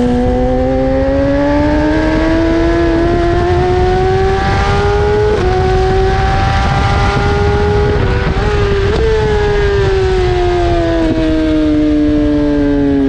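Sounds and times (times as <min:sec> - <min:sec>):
motorcycle engine at high revs: 0:00.0 - 0:13.0
wind buffeting microphone: 0:00.0 - 0:13.0.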